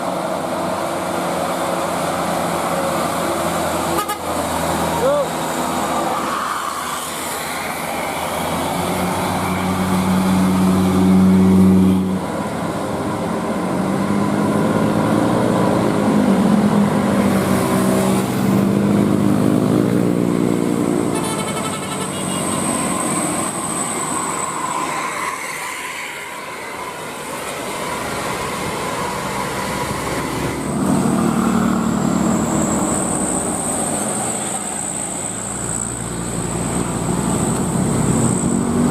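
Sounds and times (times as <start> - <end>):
buses driving past: 0.0 - 38.9.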